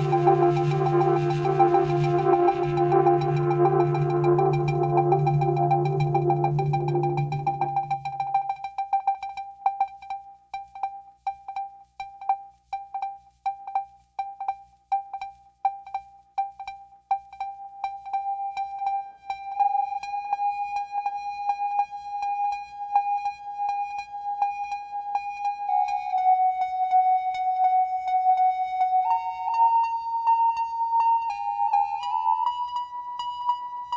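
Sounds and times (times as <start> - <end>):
low drone: 0.0 - 8.3
synthesizer pulsing note: 0.0 - 8.4.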